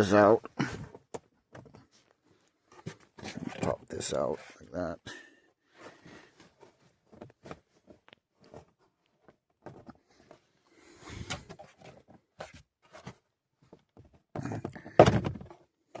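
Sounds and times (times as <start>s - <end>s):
plastic glove box clicks and knocks: 14.0s - 16.0s.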